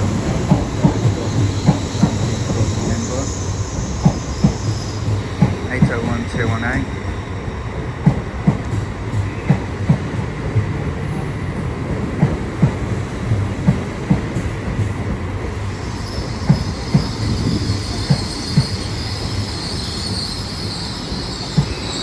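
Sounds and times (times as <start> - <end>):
electric train running slowly: 0.0 - 22.0
wheel and brake squeal: 0.3 - 5.2, 15.7 - 22.0.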